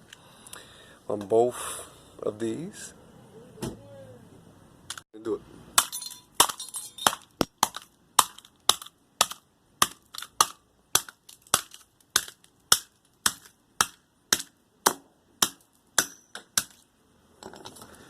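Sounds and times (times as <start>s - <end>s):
hammer striking metal: 15.4s - 16.7s.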